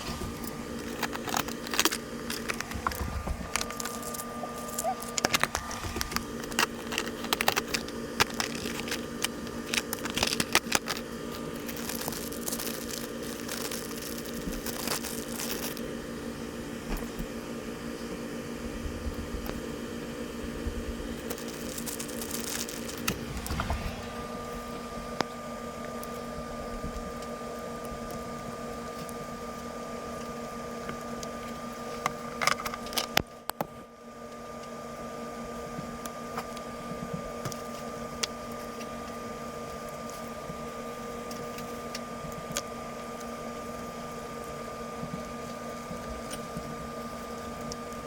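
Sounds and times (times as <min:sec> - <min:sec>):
crinkling rustles: 0:00.0 - 0:15.8, 0:21.3 - 0:25.2
steady low hum: 0:00.0 - 0:15.9, 0:20.4 - 0:28.1.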